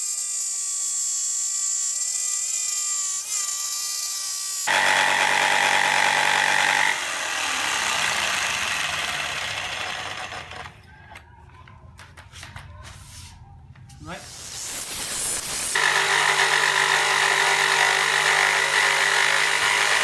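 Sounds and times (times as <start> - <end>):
jigsaw cutting wood: 4.6 - 10.8, 15.6 - 20.0.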